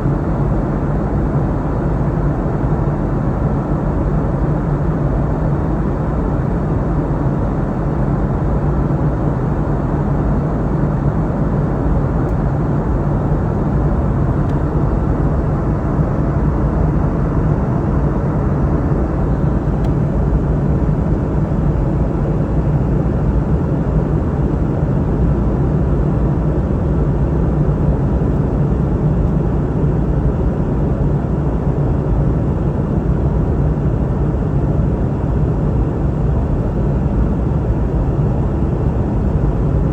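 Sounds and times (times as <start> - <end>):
jet engines and airflow rumble: 0.0 - 39.9
low steady hum: 9.0 - 39.9.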